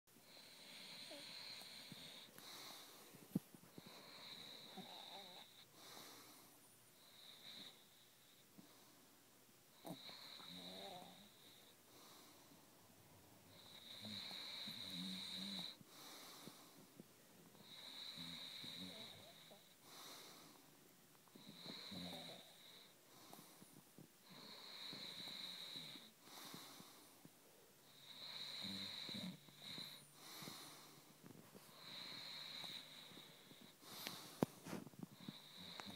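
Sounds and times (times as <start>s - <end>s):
faint whistling snoring: 3.8s - 5.6s, 9.8s - 11.6s, 13.5s - 15.8s, 17.6s - 19.7s, 21.4s - 22.9s, 24.2s - 26.1s, 27.9s - 30.6s, 35.2s - 35.9s.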